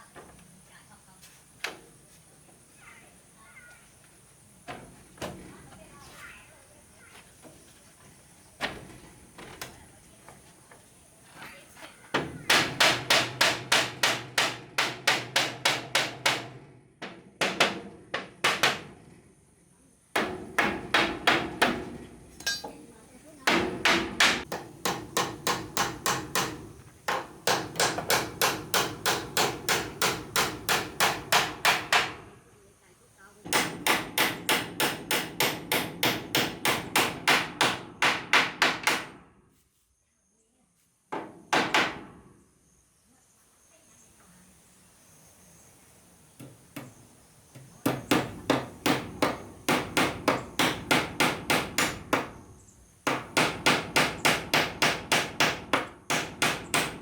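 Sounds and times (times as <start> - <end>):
hammer driving nails into wood: 12.5 - 19.0, 23.5 - 32.2, 33.5 - 39.2, 47.8 - 52.4, 53.1 - 57.0.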